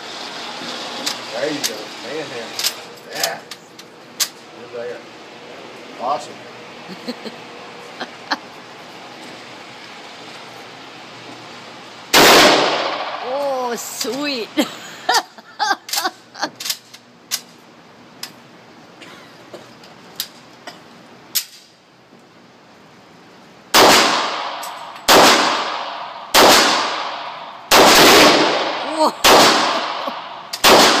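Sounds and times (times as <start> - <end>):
loud gunshots with echo: 12.1 - 13.2, 23.7 - 31.0.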